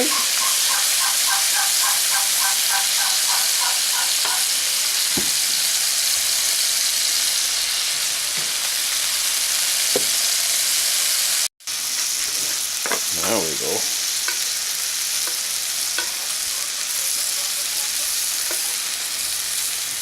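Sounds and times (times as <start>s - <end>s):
faint chirping: 0.0s - 4.6s
meat sizzling in frying pan: 0.0s - 20.0s.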